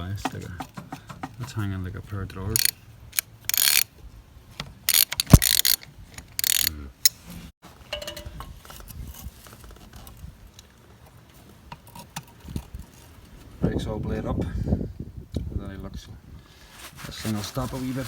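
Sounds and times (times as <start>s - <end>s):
ratchet spanner clicking: 2.6s - 3.9s, 4.9s - 7.2s
tool clicking on metal: 2.6s - 3.9s, 4.9s - 7.2s.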